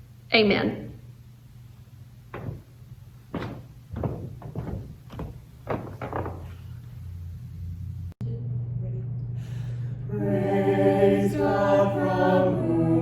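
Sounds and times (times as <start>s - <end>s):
steady low hum: 0.0s - 13.0s
soft knocks and thumps: 2.3s - 6.7s.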